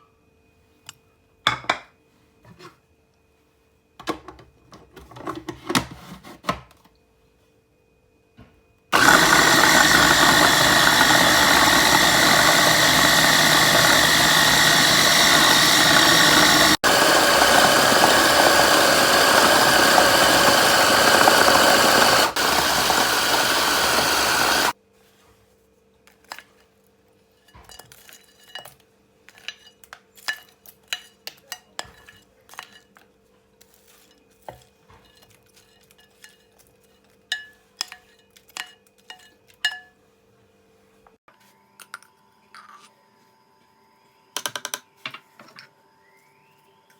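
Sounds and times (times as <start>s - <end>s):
electric food processor running: 8.9s - 24.8s.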